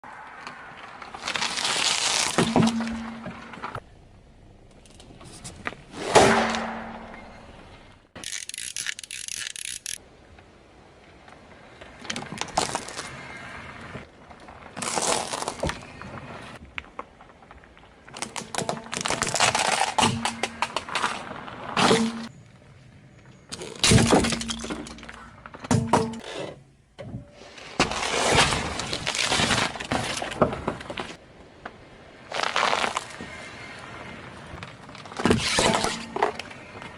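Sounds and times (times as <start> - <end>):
loud crunch under car tyre: 0.1 - 3.9, 11.7 - 22.3, 27.4 - 36.9
fine crackling: 1.0 - 3.6, 32.3 - 33.7.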